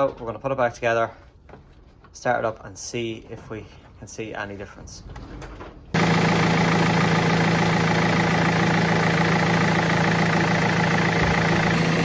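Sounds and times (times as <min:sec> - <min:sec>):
diesel engine idling: 0:06.0 - 0:12.0.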